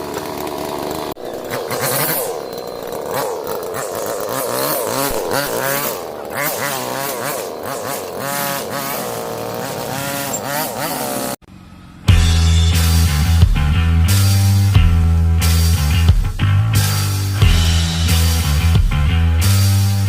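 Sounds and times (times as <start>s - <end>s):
lawn mower engine revving: 0.0s - 20.0s
loud music: 12.1s - 20.0s.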